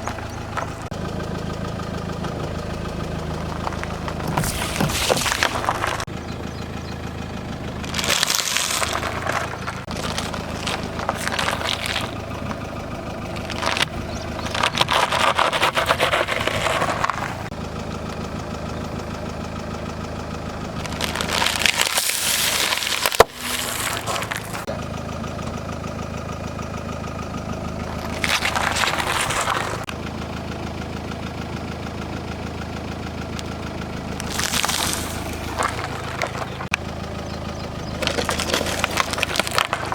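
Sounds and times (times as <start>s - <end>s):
car engine idling: 0.0s - 39.9s
tyre crushing objects: 3.3s - 6.1s, 7.8s - 12.6s, 13.3s - 17.5s, 20.8s - 24.7s, 28.0s - 29.9s, 34.2s - 36.8s, 37.9s - 39.9s.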